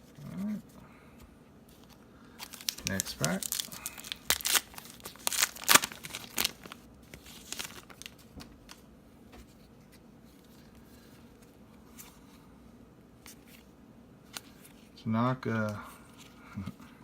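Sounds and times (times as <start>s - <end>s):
wrapper crinkling: 1.8s - 8.8s
cards handled with soft clicks: 14.3s - 14.8s.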